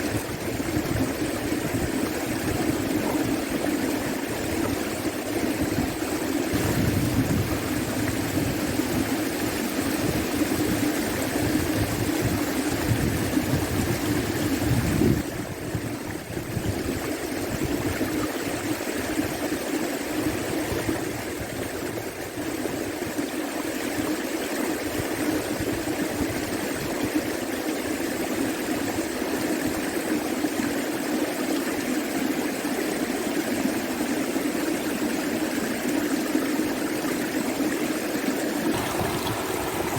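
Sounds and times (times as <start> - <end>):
river water rushing: 35.7 - 39.9.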